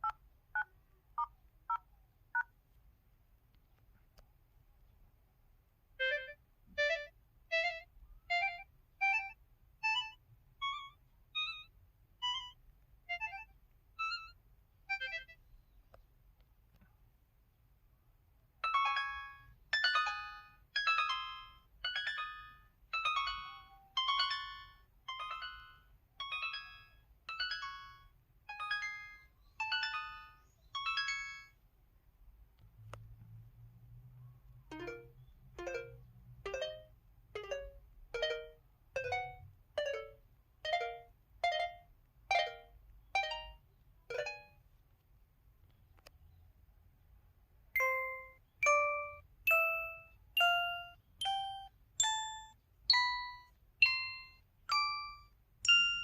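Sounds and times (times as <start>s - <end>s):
clarinet key tones: 6.0s - 15.4s, 47.8s - 56.0s.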